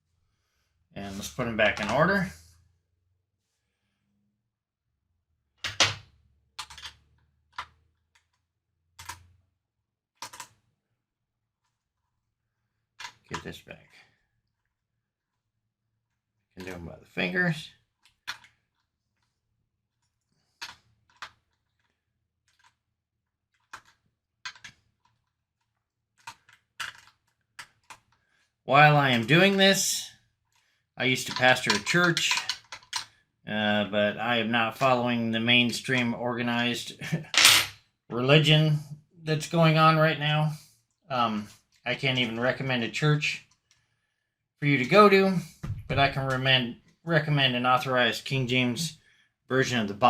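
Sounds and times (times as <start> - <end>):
small metal parts clicking: 23.5 - 28.0.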